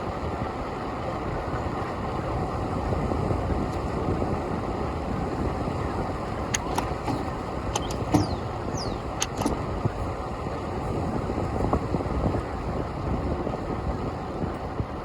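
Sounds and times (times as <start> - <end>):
city traffic: 0.0 - 15.0
wind rumble on microphone: 0.0 - 15.0
sharp clicks: 6.5 - 9.6
short high squeaks: 7.0 - 9.4.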